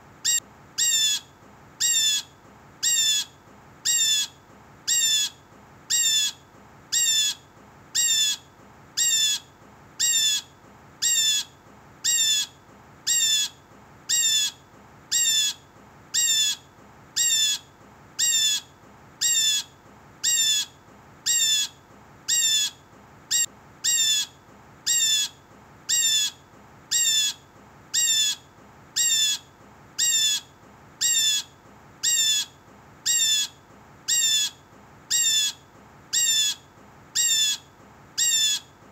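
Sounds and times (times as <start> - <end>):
blue jay squawking call: 0.2 - 3.3, 3.9 - 6.4, 7.0 - 7.4, 8.0 - 8.4, 9.0 - 12.5, 13.1 - 15.6, 16.2 - 16.6, 17.2 - 17.6, 18.2 - 20.7, 21.3 - 27.4, 28.0 - 28.4, 29.0 - 29.4, 30.0 - 32.5, 33.1 - 35.6, 36.2 - 36.6, 37.2 - 37.6, 38.2 - 38.7.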